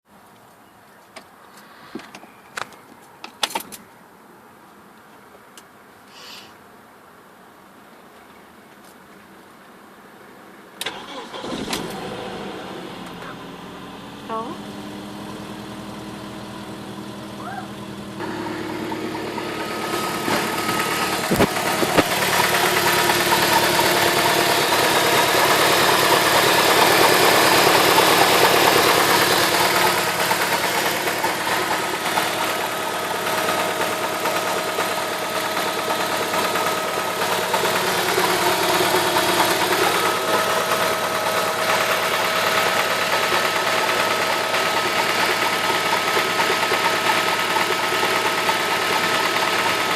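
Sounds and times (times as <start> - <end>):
car engine idling with knocking: 13.0 - 49.9.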